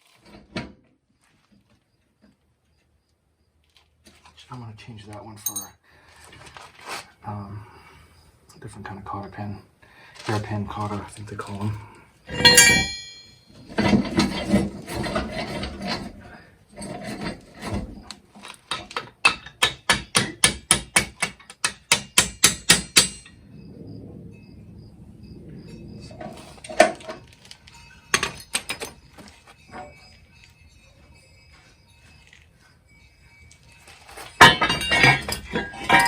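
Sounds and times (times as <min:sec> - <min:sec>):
metal clanks and clinks: 0:05.4 - 0:05.8, 0:11.4 - 0:23.4, 0:26.0 - 0:36.0
metal parts scraping and clattering: 0:12.3 - 0:19.6, 0:26.1 - 0:30.6, 0:33.4 - 0:36.0
hammer striking steel: 0:19.3 - 0:23.3.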